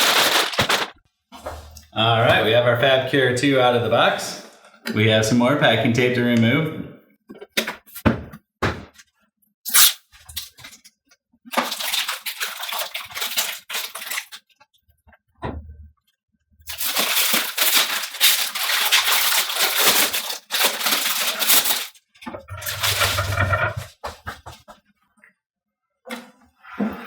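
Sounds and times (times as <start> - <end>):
packing tape peeling: 0.0 - 0.9, 9.7 - 10.0, 16.7 - 21.9.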